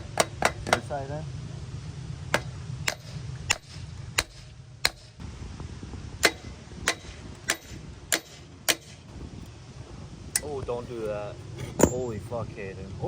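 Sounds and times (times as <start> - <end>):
hammer striking steel frame: 0.0 - 0.9, 2.3 - 5.2, 6.2 - 9.1
steady low hum: 0.0 - 13.0.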